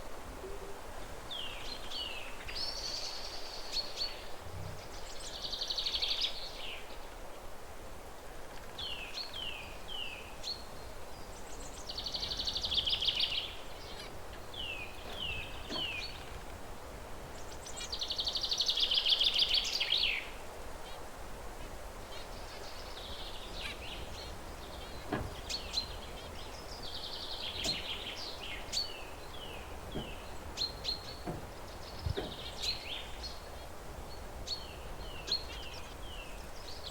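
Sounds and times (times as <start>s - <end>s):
buzzy bird song phrases: 0.0s - 7.5s, 8.7s - 36.9s
finches calling: 21.6s - 36.9s.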